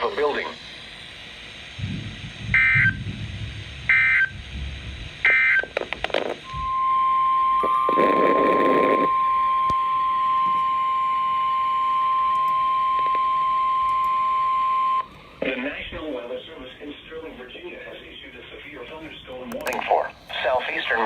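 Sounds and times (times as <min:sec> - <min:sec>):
radio static and crackle: 0:00.0 - 0:00.6, 0:03.9 - 0:09.8, 0:15.4 - 0:21.0.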